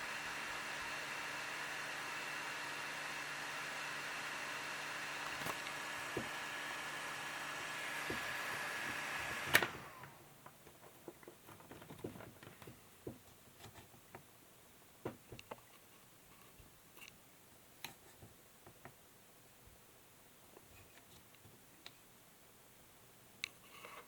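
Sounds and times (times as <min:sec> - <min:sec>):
laptop cooling fan whine: 0:00.0 - 0:10.4.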